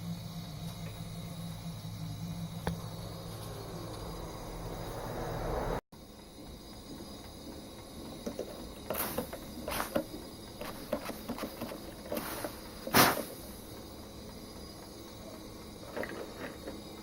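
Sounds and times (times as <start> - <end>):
steady noise: 0.0 - 7.4
short scraping and rustling: 8.8 - 13.5.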